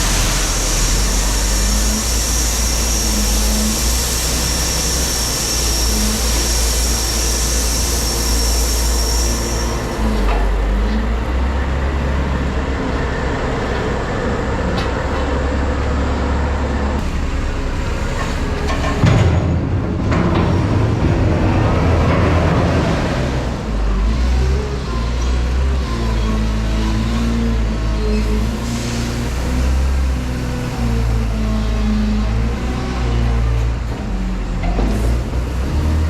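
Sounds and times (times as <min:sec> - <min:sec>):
heavy diesel machinery engine: 0:00.0 - 0:36.0.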